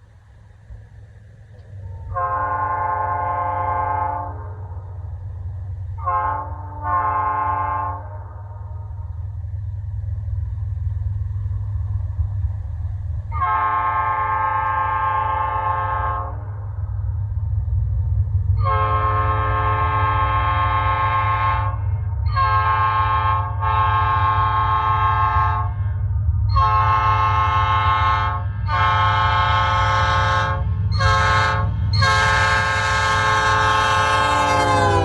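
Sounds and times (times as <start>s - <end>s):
locomotive air horn blasts: 2.1s - 4.7s, 6.0s - 9.0s, 13.3s - 16.6s, 18.6s - 35.0s.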